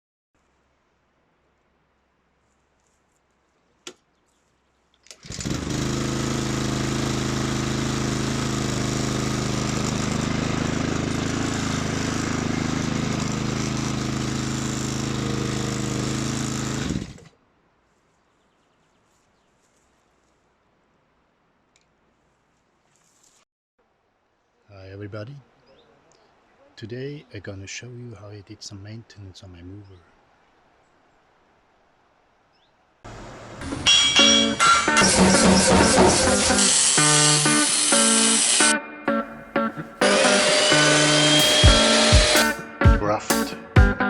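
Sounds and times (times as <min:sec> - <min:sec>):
lawn mower engine running: 0:05.0 - 0:17.4, 0:33.1 - 0:42.6
click: 0:21.7 - 0:21.9.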